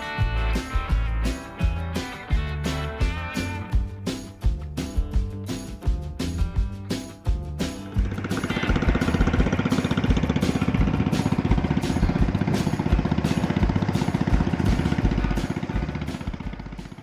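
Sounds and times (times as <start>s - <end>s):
small engine chugging: 7.6s - 17.0s.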